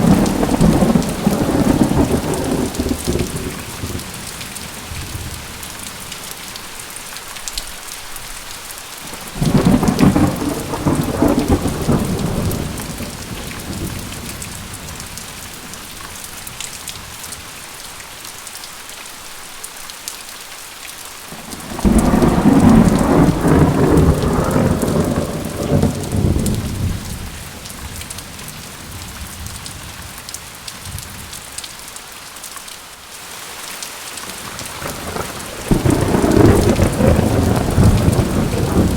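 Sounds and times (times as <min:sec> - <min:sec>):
thunder rumbling: 0:00.0 - 0:05.5, 0:09.3 - 0:15.3, 0:21.3 - 0:29.5, 0:34.4 - 0:38.9
steady rain falling: 0:00.0 - 0:38.9.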